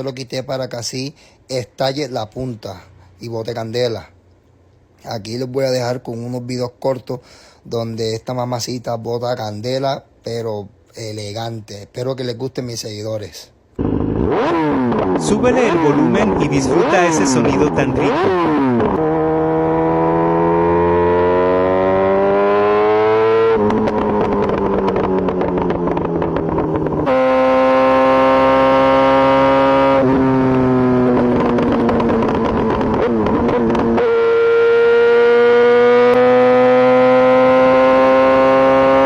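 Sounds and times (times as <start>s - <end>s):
exhaust popping and crackling: 13.8s - 19.6s, 23.2s - 36.4s
motorcycle engine revving: 13.8s - 39.0s.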